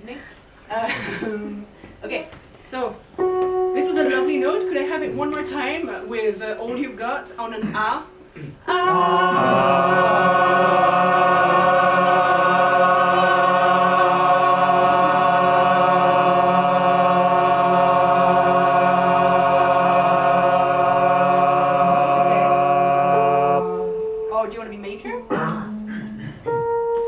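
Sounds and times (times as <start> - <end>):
audience singing sustained ah: 4.0 - 24.0.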